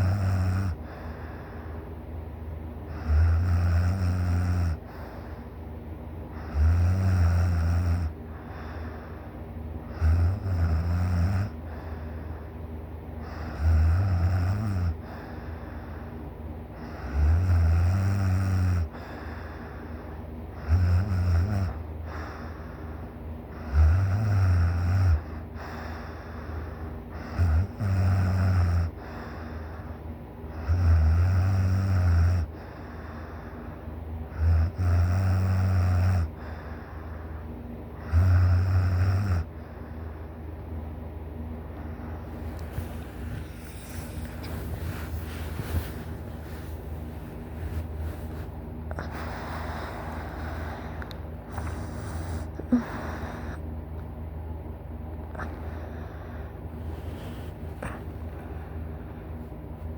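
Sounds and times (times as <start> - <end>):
person snoring loudly: 0.0 - 0.8, 2.9 - 4.8, 6.4 - 8.1, 10.0 - 11.6, 13.3 - 15.0, 16.9 - 18.9, 20.6 - 21.7, 23.6 - 25.2, 27.2 - 28.9, 30.6 - 32.5, 34.4 - 36.3, 38.0 - 39.5, 51.5 - 53.6
quiet breaths: 0.0 - 54.4, 55.0 - 59.9.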